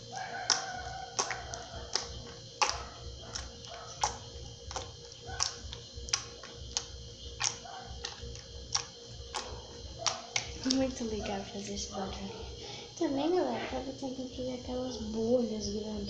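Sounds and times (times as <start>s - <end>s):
slime squished wet clicks: 0.2s - 10.9s.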